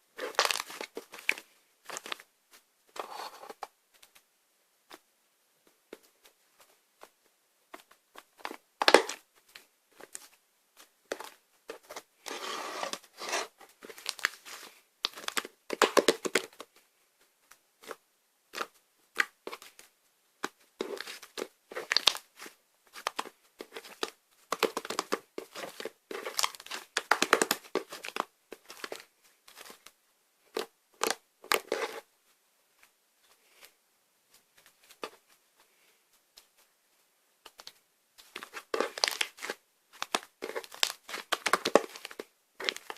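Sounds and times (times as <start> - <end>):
slime crackling and popping: 20.4 - 22.3, 22.9 - 29.0, 38.4 - 42.9.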